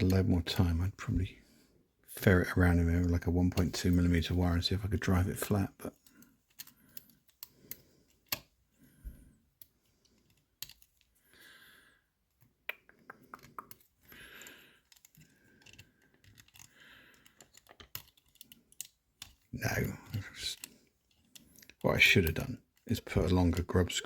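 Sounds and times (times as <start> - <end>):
lock picks clicking and tapping: 5.8 - 11.4, 12.2 - 24.0.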